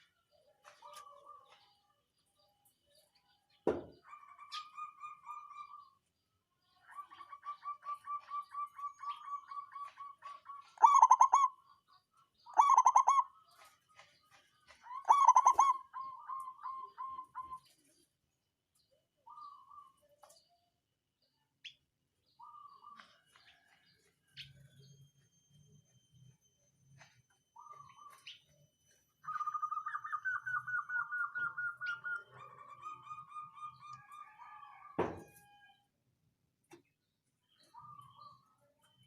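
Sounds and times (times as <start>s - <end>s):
dove cooing: 6.9s - 11.6s, 12.5s - 13.3s, 14.9s - 17.7s, 29.3s - 34.9s.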